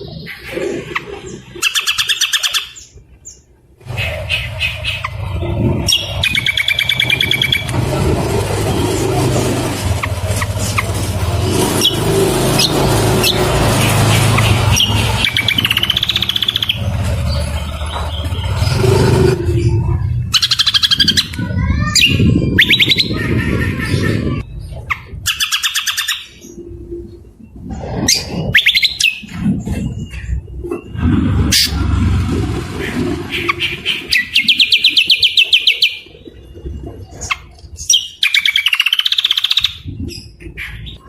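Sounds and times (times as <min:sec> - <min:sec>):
birds' rough calls: 0:00.0 - 0:27.0, 0:27.6 - 0:41.0
songbirds singing trills: 0:00.0 - 0:41.0
low rumble: 0:03.7 - 0:25.3, 0:29.2 - 0:34.9.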